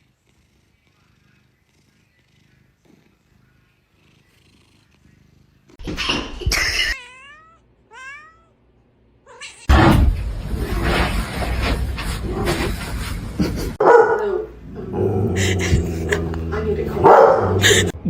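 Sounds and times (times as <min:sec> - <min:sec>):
cat meowing: 0:06.8 - 0:08.6, 0:09.2 - 0:09.7.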